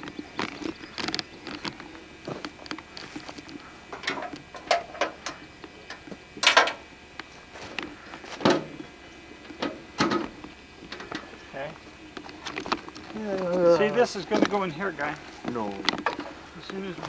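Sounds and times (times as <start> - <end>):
knocks and clatter of handling: 2.3 - 6.8.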